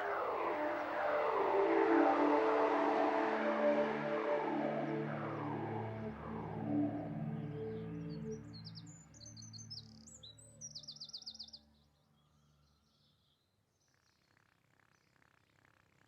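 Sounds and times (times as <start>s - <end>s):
held music chord: 0.0s - 9.1s.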